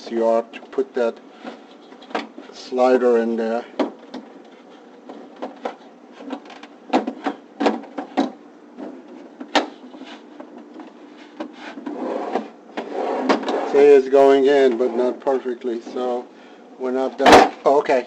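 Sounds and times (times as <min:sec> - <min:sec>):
drawer knocking and clicking on rails: 0:05.2 - 0:09.8.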